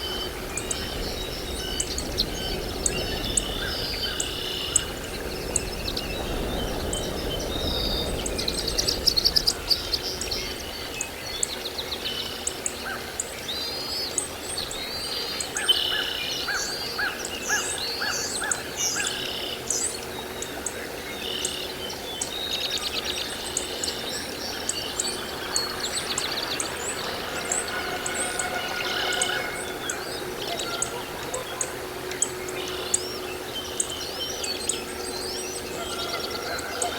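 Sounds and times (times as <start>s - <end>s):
birds chirping and singing: 0.0s - 36.9s
evenly spaced lower bird notes: 22.8s - 36.9s.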